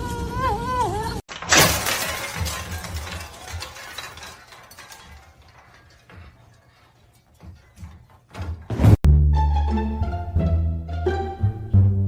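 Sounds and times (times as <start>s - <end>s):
clattering and tinkling debris: 1.3s - 8.3s
loud crash of breaking: 1.3s - 9.0s.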